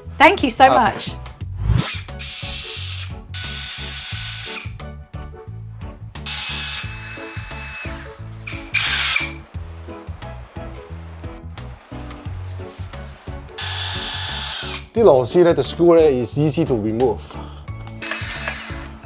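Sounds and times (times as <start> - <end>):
power drill driver whining: 1.9 - 4.8, 6.2 - 9.5, 13.5 - 15.0, 18.0 - 19.0.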